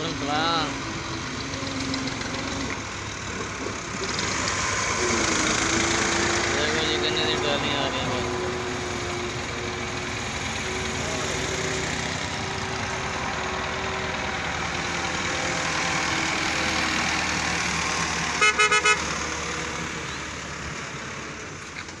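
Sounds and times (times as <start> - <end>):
vehicle passing: 0.0 - 22.0
horn toots: 18.3 - 19.3.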